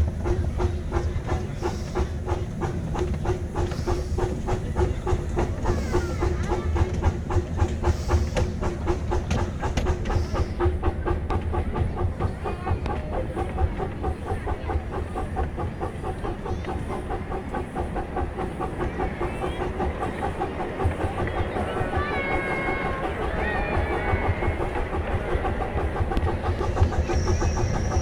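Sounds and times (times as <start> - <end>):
steam locomotive chuffing: 0.0 - 28.0.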